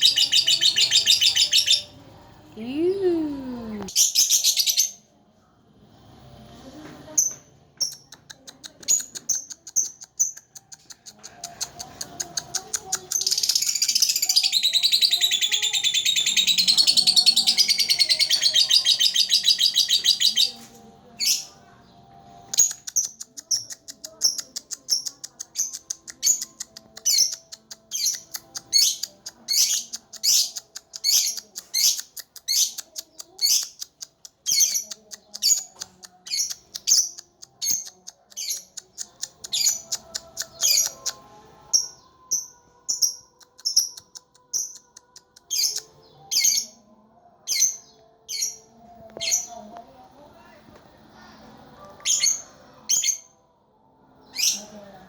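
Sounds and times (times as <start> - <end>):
bird chattering trill: 0.0 - 1.9, 12.1 - 20.6
bird sharp chirps: 0.0 - 1.9.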